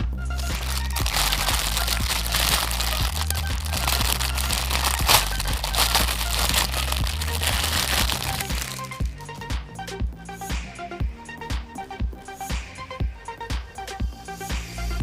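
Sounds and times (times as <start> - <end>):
background music with bass line: 0.0 - 15.0
plastic packaging crinkling: 0.4 - 9.1.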